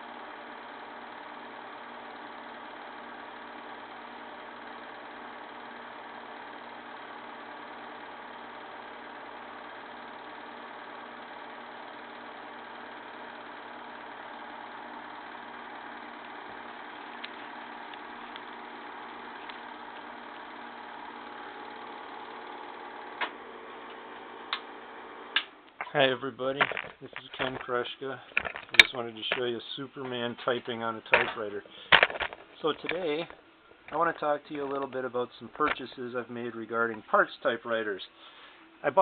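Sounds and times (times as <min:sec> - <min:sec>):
film projector humming: 0:00.0 - 0:25.9.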